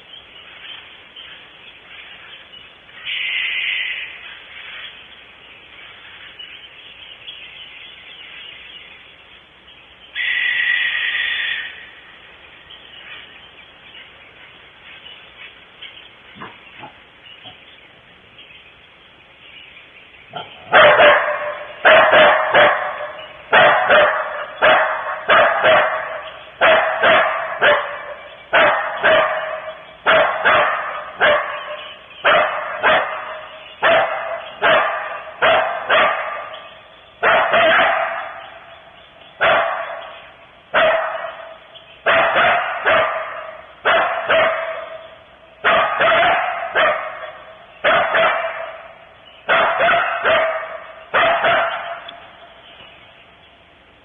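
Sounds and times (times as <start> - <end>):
coyote barking: 10.2 - 12.2, 20.2 - 53.5.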